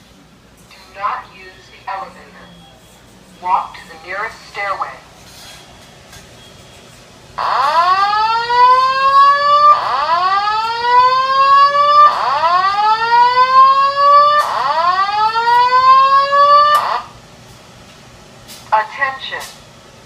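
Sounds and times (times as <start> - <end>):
fire alarm whoop tone: 6.4 - 17.2.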